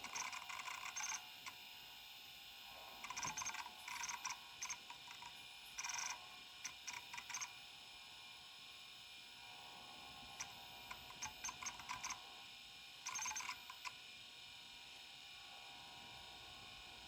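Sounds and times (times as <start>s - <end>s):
faint hum: 0.0s - 17.0s.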